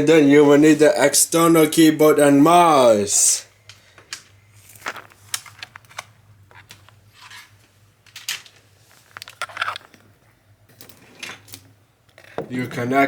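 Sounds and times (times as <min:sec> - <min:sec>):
keyboard and mouse handling: 0:04.1 - 0:10.0.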